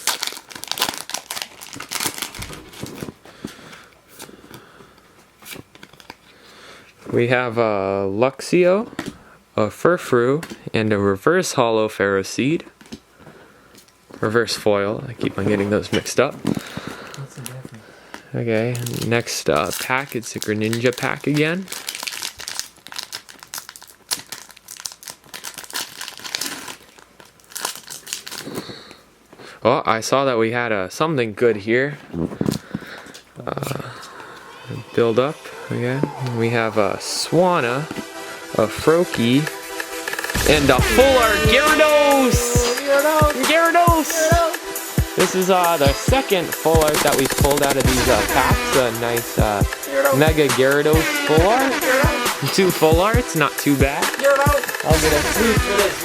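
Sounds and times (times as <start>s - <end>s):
foil wrapper crinkling and tearing: 0.0s - 4.7s, 5.4s - 6.3s, 18.6s - 29.0s, 39.2s - 52.7s, 53.3s - 56.0s.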